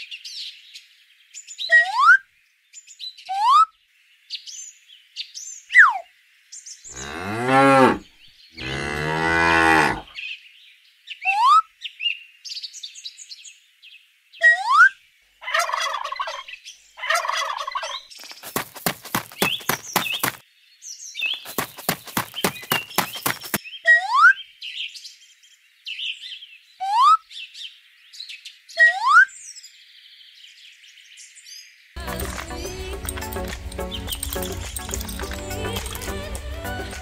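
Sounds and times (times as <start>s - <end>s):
cow mooing: 6.9s - 10.1s
rapid clicking bird calls: 17.1s - 20.4s, 21.2s - 23.6s.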